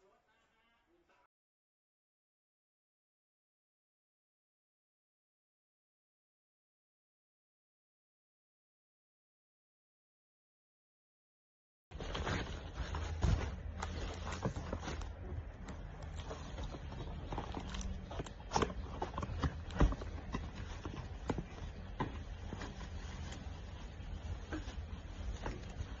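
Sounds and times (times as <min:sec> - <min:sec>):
steady low hum: 0:11.9 - 0:26.0.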